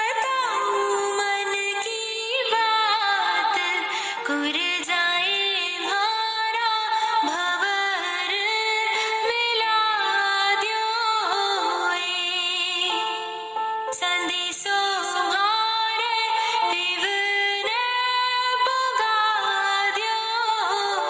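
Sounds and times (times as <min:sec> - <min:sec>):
woman singing folk song: 0:00.0 - 0:13.3, 0:13.9 - 0:21.0.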